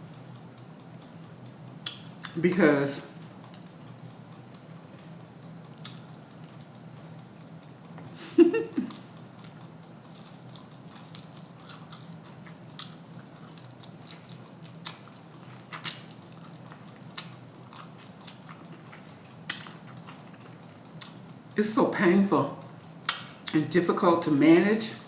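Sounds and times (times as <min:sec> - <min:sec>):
person chewing food: 0:05.7 - 0:06.9, 0:08.0 - 0:21.4
wet mouth clicks: 0:08.8 - 0:21.2, 0:23.1 - 0:23.6.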